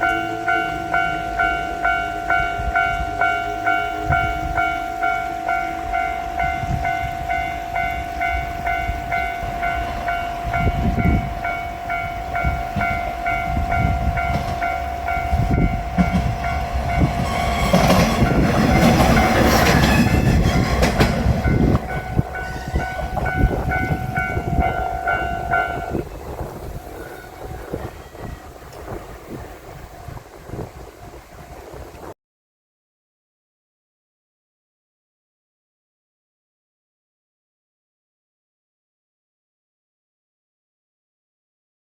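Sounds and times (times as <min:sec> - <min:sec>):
level-crossing warning bell: 0:00.0 - 0:28.8
diesel railcar engine: 0:00.0 - 0:32.1
train wheel clatter: 0:06.4 - 0:30.7.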